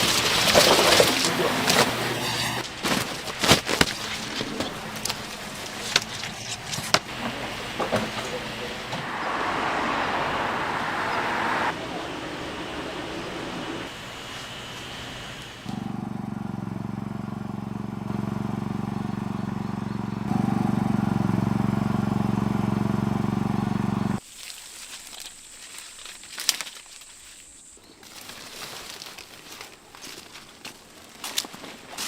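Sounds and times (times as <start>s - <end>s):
engine running: 0.0s - 24.2s
outdoor rustling: 0.0s - 32.0s
thin high whine: 1.0s - 2.6s.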